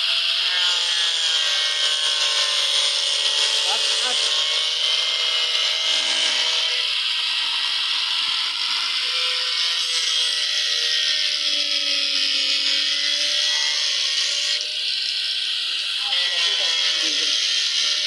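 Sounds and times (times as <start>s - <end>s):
power tool cutting wood: 0.0s - 18.0s.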